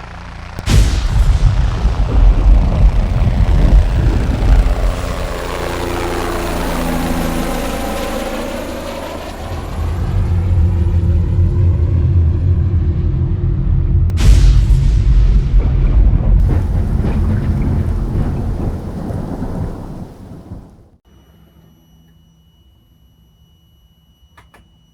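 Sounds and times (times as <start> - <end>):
truck diesel engine rumbling: 1.5 - 14.1.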